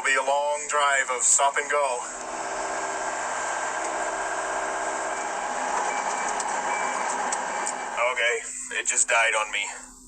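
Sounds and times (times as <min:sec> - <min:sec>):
diesel engine running: 0:02.1 - 0:08.1.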